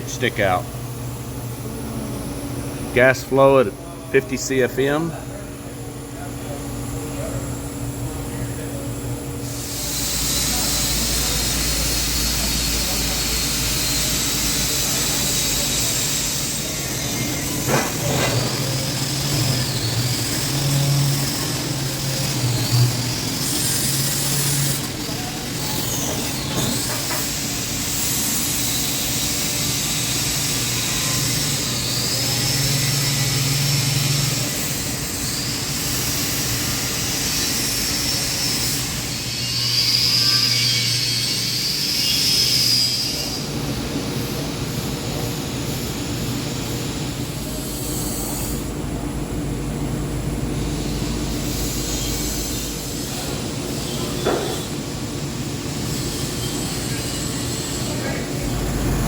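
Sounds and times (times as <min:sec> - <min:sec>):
welding arc buzzing hum: 0:00.0 - 0:43.0, 0:43.7 - 0:59.0.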